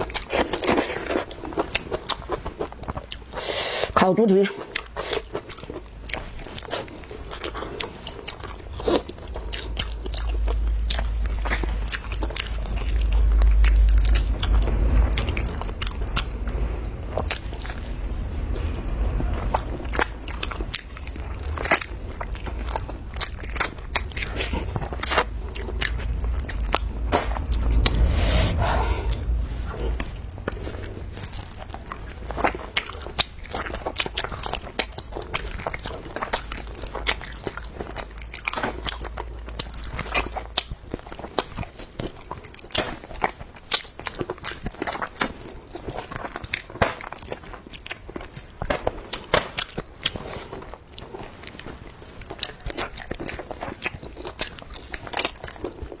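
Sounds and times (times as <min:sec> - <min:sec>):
close-up chewing and biting: 0:00.0 - 0:04.0, 0:04.6 - 0:28.1, 0:29.0 - 0:56.0
low hum: 0:07.7 - 0:41.3.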